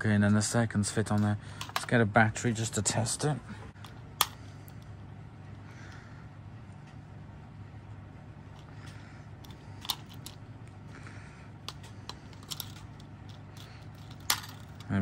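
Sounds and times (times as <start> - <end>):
light handling sounds: 7.9 - 10.8, 11.6 - 15.0.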